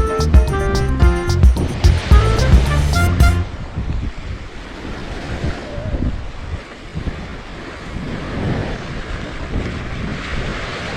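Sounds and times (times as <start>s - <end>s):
surf washing on beach: 1.6s - 10.9s
wind buffeting microphone: 3.4s - 10.9s.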